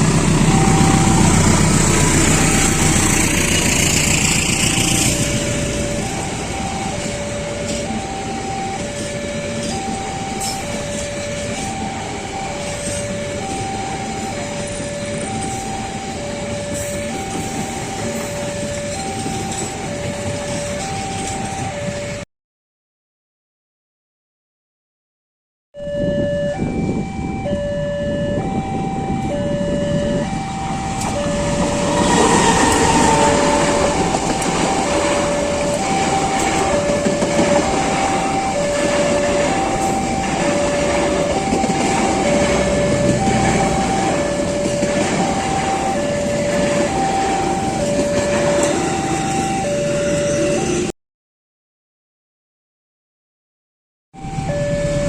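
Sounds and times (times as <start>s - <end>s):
two-tone level-crossing bell: 0.0s - 22.2s, 25.8s - 50.9s
train wheels clacking: 31.0s - 49.0s.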